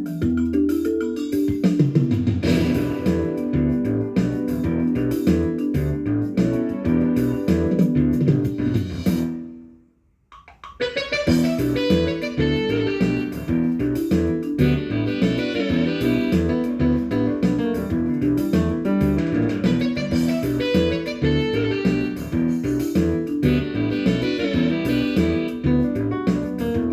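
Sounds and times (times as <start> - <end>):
instrumental background music: 0.0 - 26.9
music with steady beat: 0.1 - 9.6, 10.4 - 26.9.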